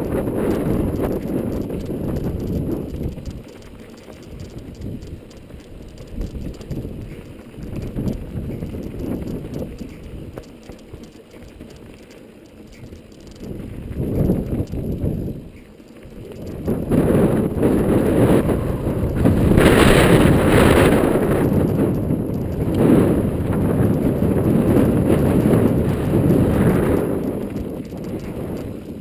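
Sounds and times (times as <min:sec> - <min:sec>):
wind buffeting microphone: 0:00.0 - 0:12.0, 0:12.7 - 0:29.0
bike tyres on dirt and rock: 0:00.0 - 0:29.0.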